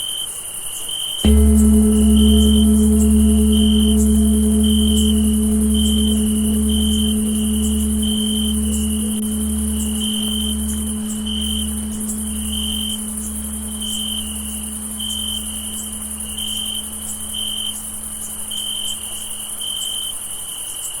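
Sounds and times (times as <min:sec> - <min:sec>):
low bell hum: 0:01.2 - 0:19.3
high insect trill: 0:01.3 - 0:19.1.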